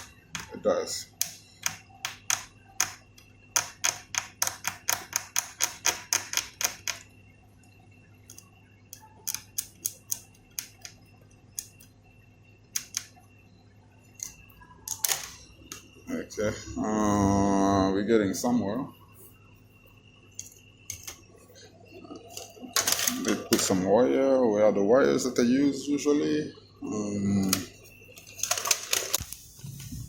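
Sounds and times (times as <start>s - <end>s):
hand tools clicking on circuit board: 1.2s - 7.1s, 8.2s - 11.9s, 12.7s - 13.2s.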